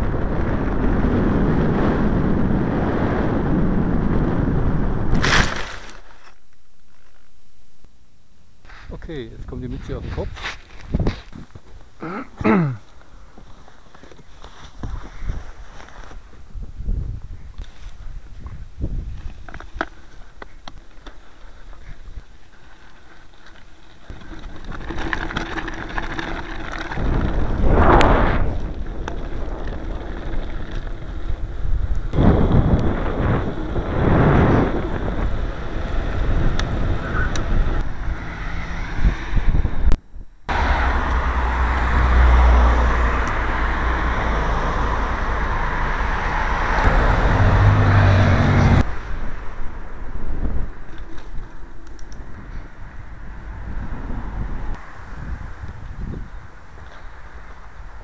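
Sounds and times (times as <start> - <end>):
wind buffeting microphone: 0.0 - 5.6, 14.8 - 22.8, 24.0 - 58.0.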